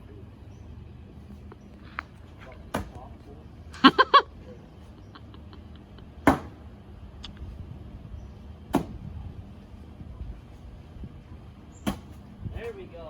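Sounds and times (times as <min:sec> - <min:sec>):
bags slapping on a board: 0:11.8 - 0:12.2.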